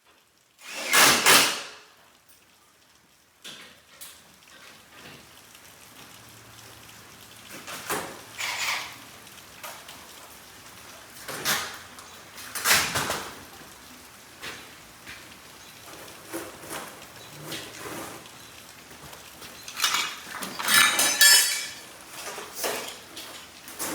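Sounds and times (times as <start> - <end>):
metal door parts clattering: 19.7 - 23.0.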